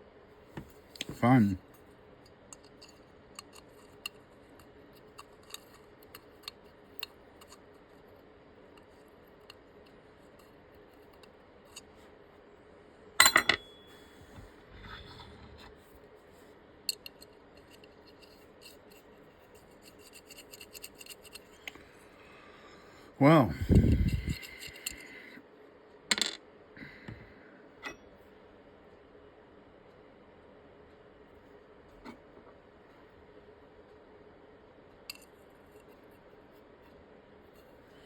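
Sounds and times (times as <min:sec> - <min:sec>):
light metal scraping: 0:13.9 - 0:15.9.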